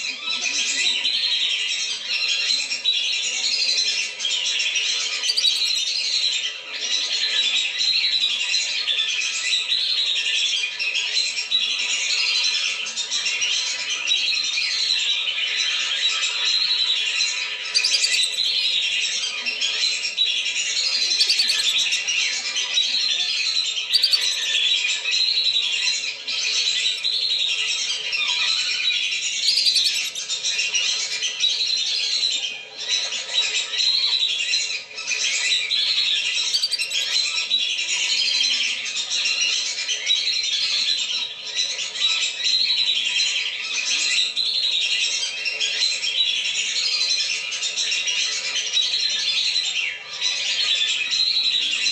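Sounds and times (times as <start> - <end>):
whistling ducks calling: 20.0 - 22.0, 23.7 - 24.8, 28.6 - 30.4, 36.2 - 37.2.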